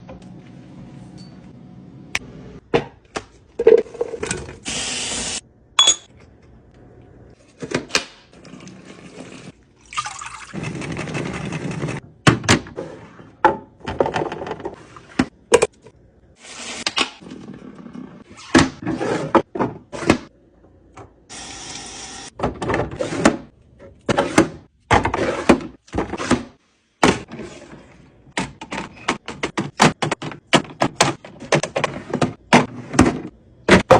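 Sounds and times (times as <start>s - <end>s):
liquid pouring into containers: 8.3s - 10.6s.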